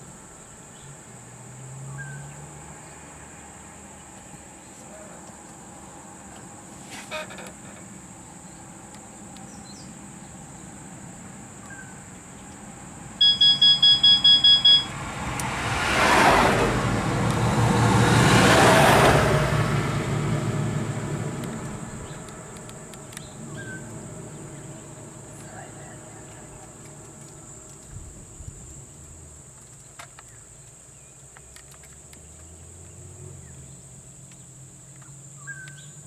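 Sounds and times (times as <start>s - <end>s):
high insect whine: 0.0s - 31.5s
motor vehicle passing: 1.1s - 13.2s, 14.4s - 35.2s
high electronic beeps: 13.2s - 14.9s.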